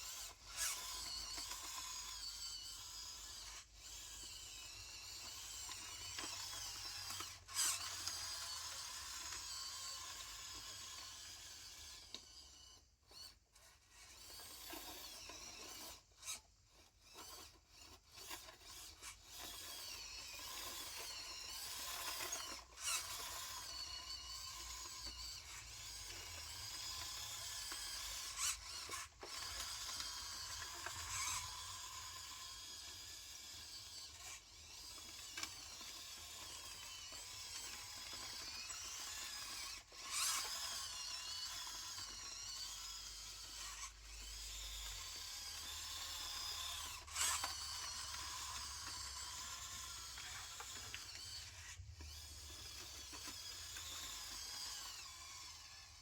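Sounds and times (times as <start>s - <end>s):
small electric motor whining: 0.0s - 56.0s.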